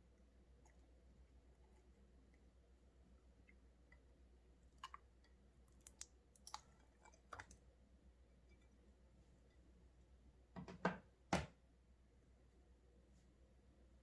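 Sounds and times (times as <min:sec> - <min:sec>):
quiet hum: 0:00.0 - 0:14.0.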